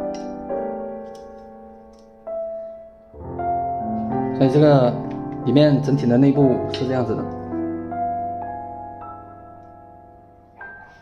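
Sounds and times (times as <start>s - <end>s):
soft piano music: 0.0s - 11.0s.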